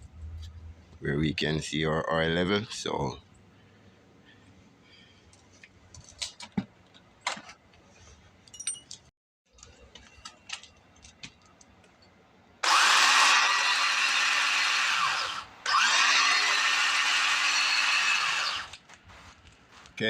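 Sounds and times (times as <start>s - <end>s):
pole saw motor whine: 12.6s - 18.8s.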